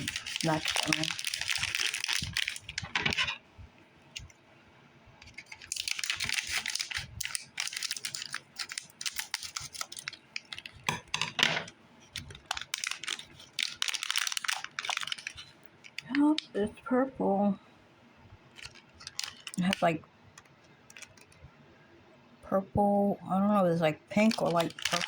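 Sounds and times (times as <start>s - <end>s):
plastic packaging crinkling: 0.0s - 3.4s, 5.2s - 16.5s, 18.5s - 21.4s, 24.1s - 25.0s.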